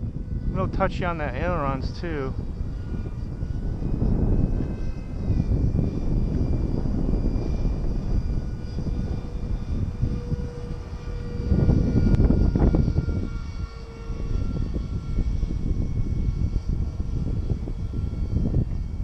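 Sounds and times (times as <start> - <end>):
model jet fans whining: 0.0 - 19.0
wind buffeting microphone: 0.0 - 19.0.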